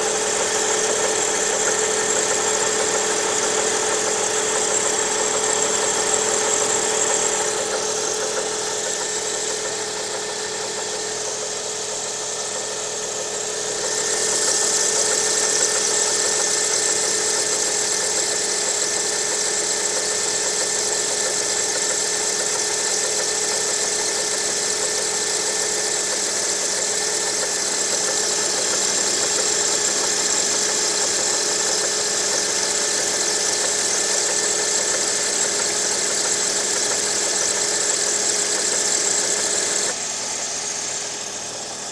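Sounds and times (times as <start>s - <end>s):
high steady whine: 0.0s - 18.0s, 39.0s - 41.9s
car engine idling with knock: 0.0s - 41.9s.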